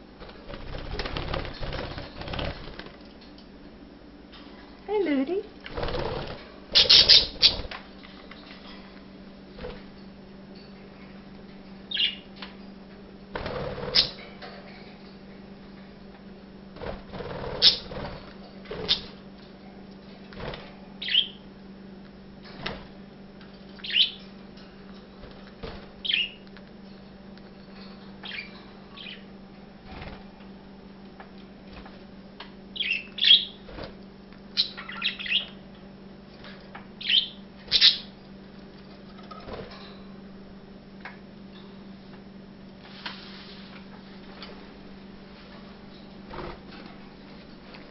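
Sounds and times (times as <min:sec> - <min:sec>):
budgerigars chirping: 0:06.8 - 0:07.6, 0:17.6 - 0:17.8, 0:21.0 - 0:21.4, 0:23.8 - 0:24.2, 0:32.8 - 0:33.6, 0:34.6 - 0:35.5, 0:37.0 - 0:38.1.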